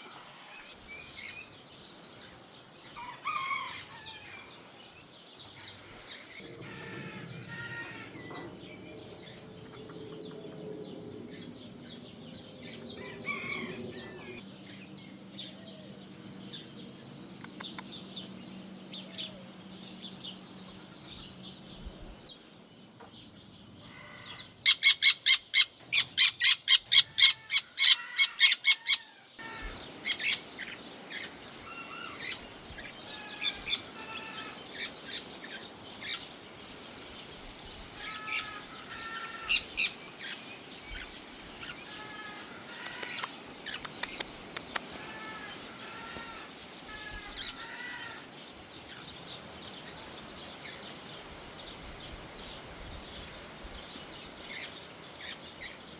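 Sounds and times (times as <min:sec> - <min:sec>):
birds chirping: 0:04.8 - 0:23.3, 0:24.7 - 0:55.9
bird repeated calls: 0:24.7 - 0:36.2
background hiss: 0:29.4 - 0:55.9.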